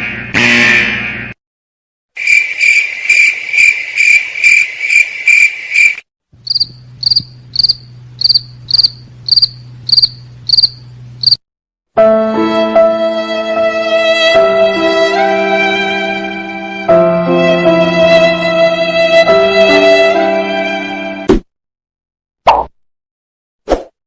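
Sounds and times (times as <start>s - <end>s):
crickets chirping: 2.2s - 11.4s
music: 12.0s - 21.3s.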